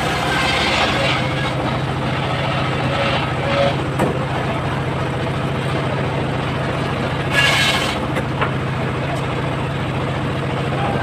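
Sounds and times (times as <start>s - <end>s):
circular saw running: 0.0s - 8.2s.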